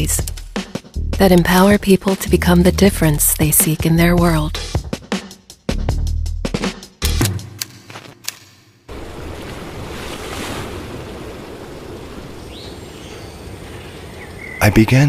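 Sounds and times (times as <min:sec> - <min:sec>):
music with percussive hits: 0:00.1 - 0:01.7, 0:03.6 - 0:08.8
ocean surf: 0:08.9 - 0:14.6.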